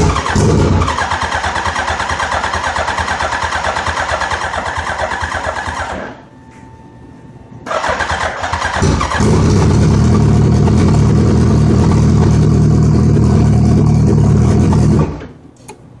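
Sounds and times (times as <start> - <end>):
motorcycle engine running: 0.0 - 5.9, 8.6 - 15.2
motorcycle engine turning over: 0.0 - 6.1, 7.7 - 15.3.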